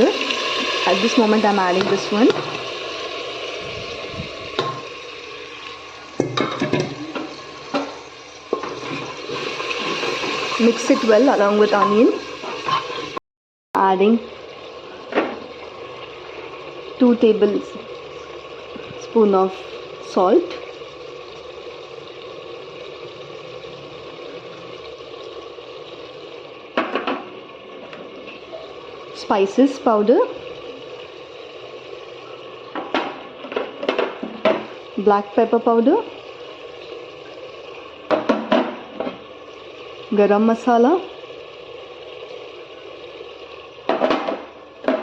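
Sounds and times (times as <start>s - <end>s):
onions sizzling in a pan: 0.0s - 13.2s, 13.8s - 45.0s
spoon scraping and knocking pan: 6.2s - 11.1s, 11.7s - 13.2s.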